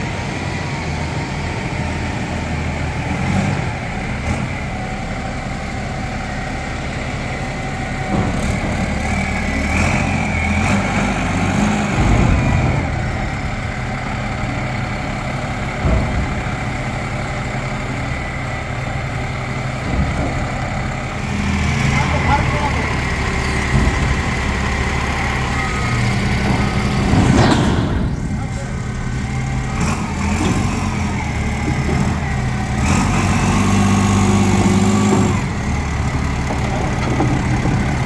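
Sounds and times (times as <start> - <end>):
pile driver diesel engine idling: 0.0 - 38.0
knocks: 8.0 - 18.5, 19.2 - 32.7.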